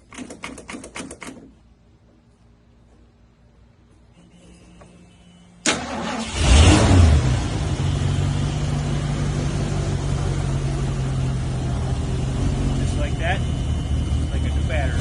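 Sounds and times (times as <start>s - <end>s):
car engine starting and idling: 5.6s - 15.0s.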